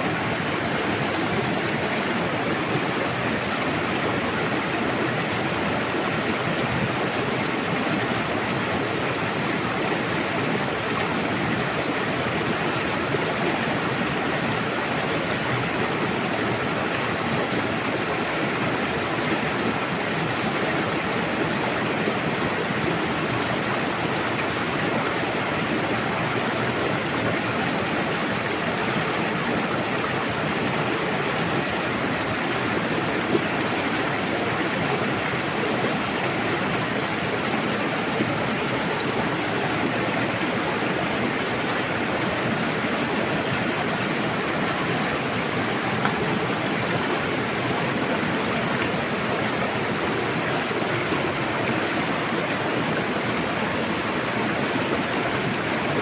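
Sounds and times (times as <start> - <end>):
river water splashing over rocks: 0.3 - 56.0.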